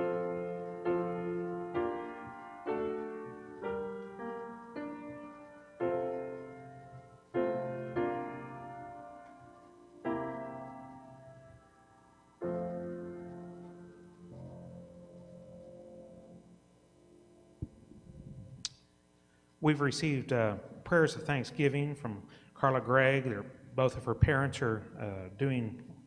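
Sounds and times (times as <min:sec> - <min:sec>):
piano playing slow chords: 0:00.0 - 0:18.7.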